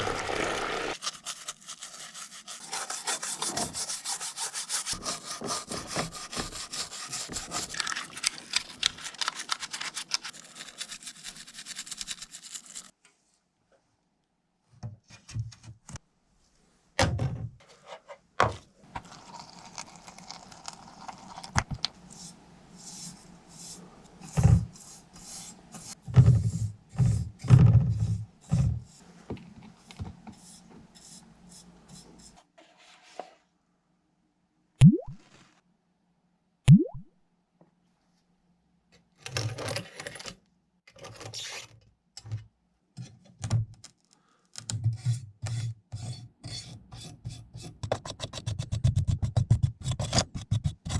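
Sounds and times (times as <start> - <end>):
scraping on model car body: 0.9 - 12.9, 44.6 - 50.9.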